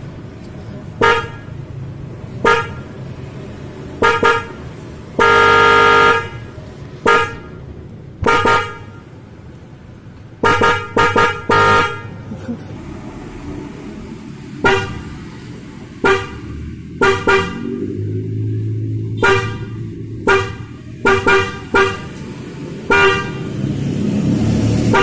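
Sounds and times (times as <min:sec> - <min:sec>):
twin-tone car horn honking: 0:01.0 - 0:01.6, 0:02.4 - 0:03.0, 0:04.0 - 0:07.6, 0:08.2 - 0:09.1, 0:10.4 - 0:12.2, 0:14.6 - 0:15.1, 0:16.0 - 0:17.8, 0:19.1 - 0:23.5.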